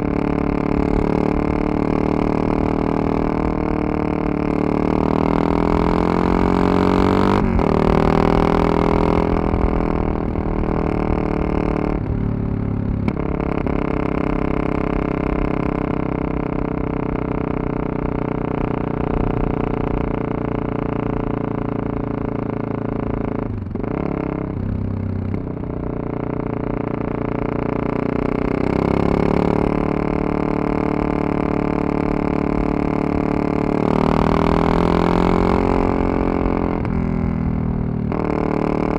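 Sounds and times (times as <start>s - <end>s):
motorcycle engine accelerating: 0.0s - 38.9s.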